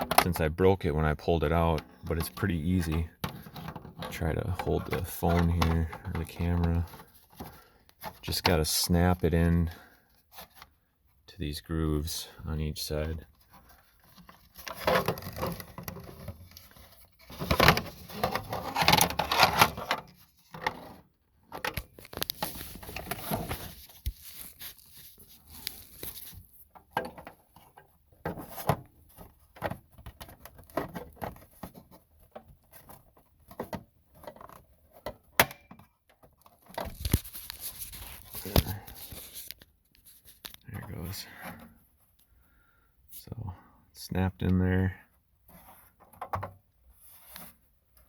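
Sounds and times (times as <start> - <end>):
plastic clicks and scrapes: 1.5 - 8.6, 13.0 - 41.8
rustle of hands: 22.2 - 26.5.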